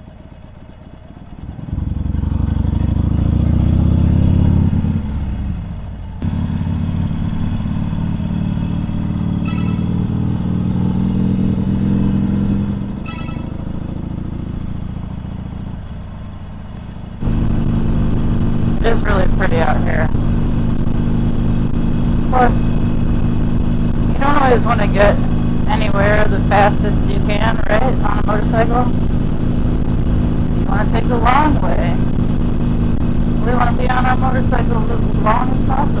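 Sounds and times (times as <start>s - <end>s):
motorcycle engine revving: 0.2s - 36.0s
short high chirps: 9.5s - 10.2s, 13.1s - 13.7s.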